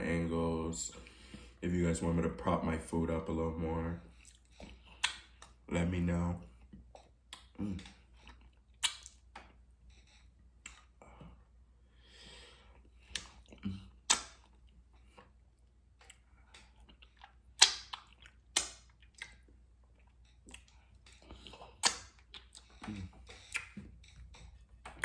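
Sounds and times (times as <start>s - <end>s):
chewing with wet mouth smacks: 6.6s - 9.6s, 12.7s - 24.3s.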